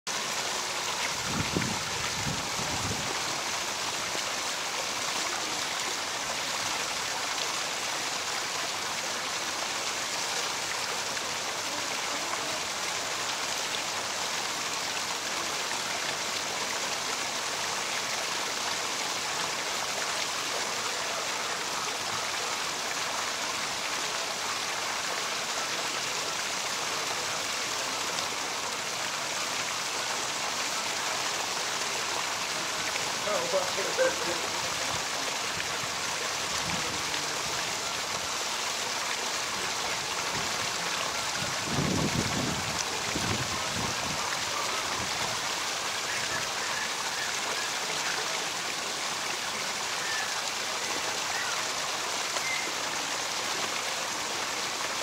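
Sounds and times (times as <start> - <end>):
waterfall rushing: 0.1 - 55.0.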